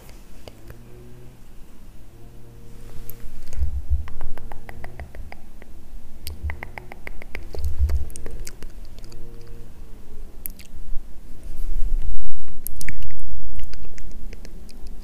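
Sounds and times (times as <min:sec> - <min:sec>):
low thumps: 0:02.8 - 0:09.8.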